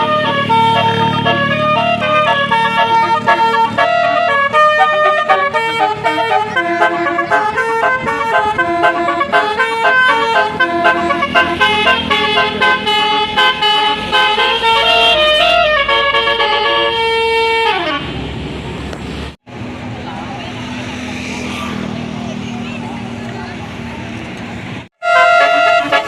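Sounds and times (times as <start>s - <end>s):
multi-trumpet air horn tune: 0.0s - 18.1s, 25.0s - 26.0s.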